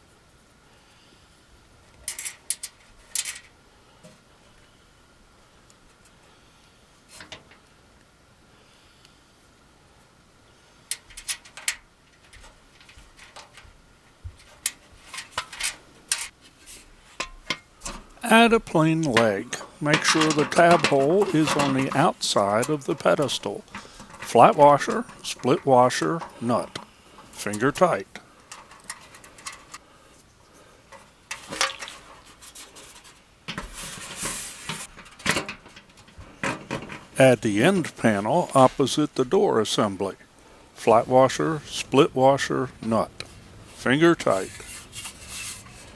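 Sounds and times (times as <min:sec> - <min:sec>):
metal parts clicking and clinking: 0:02.0 - 0:03.6, 0:10.9 - 0:13.7, 0:14.4 - 0:16.3, 0:19.0 - 0:29.8
metal parts scraping and rubbing: 0:02.1 - 0:03.5, 0:14.4 - 0:29.8, 0:30.9 - 0:39.3, 0:43.2 - 0:45.9.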